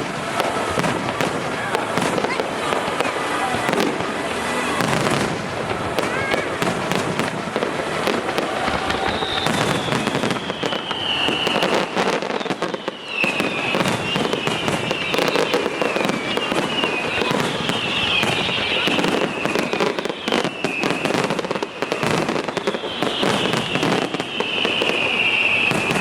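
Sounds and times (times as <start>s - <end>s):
fireworks bangs and crackles: 0.0s - 26.0s
whistling tones sliding down: 8.1s - 26.0s.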